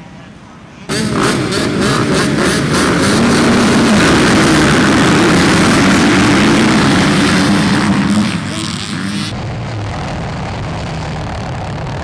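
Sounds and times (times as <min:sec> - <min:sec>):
dirt bike engines revving: 0:00.9 - 0:09.4.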